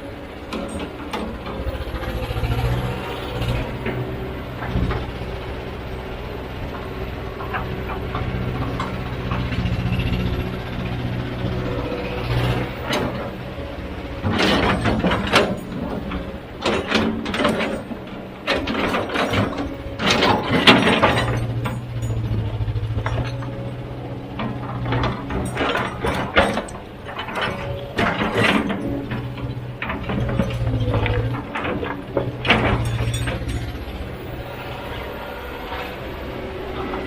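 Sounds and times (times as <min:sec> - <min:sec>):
diesel engine running: 0:00.0 - 0:37.0
clattering and scraping strikes: 0:14.2 - 0:34.4.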